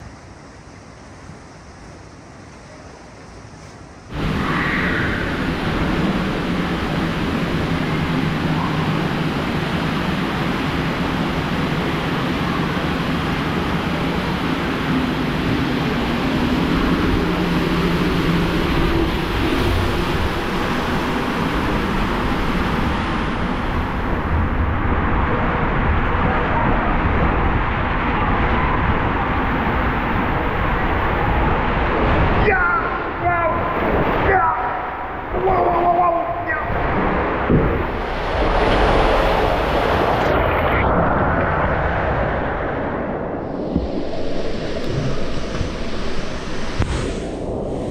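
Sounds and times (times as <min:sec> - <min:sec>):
water rushing through waterslide tube: 0:04.1 - 0:47.9
rider sliding rumble: 0:43.2 - 0:47.9.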